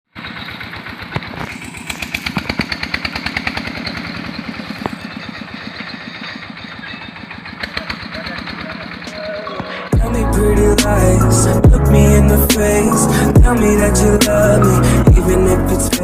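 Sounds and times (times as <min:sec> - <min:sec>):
small engine chugging: 0:00.1 - 0:12.4.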